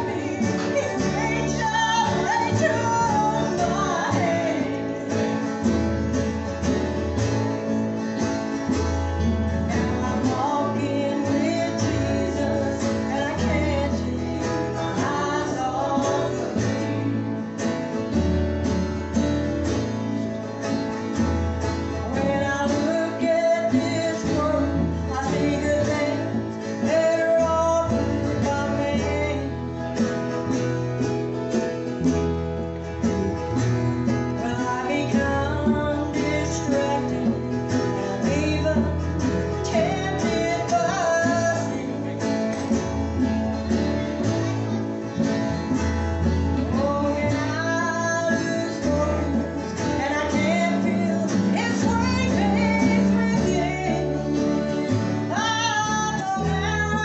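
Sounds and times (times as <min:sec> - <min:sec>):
group singing: 0:00.0 - 0:05.7, 0:09.7 - 0:17.4
strummed acoustic guitar: 0:00.0 - 0:57.0.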